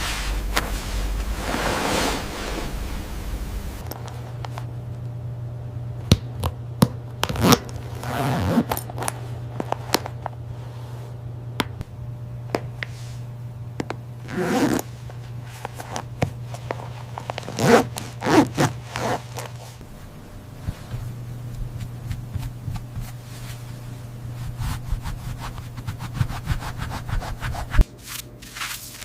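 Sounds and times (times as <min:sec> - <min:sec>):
steady low hum: 0:00.0 - 0:29.0
jacket zipper being pulled: 0:07.3 - 0:09.1, 0:14.3 - 0:14.9, 0:17.1 - 0:19.8.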